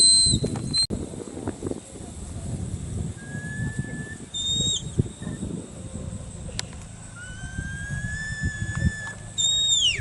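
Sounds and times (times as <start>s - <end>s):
shepherd whistling commands: 7.2s - 10.0s.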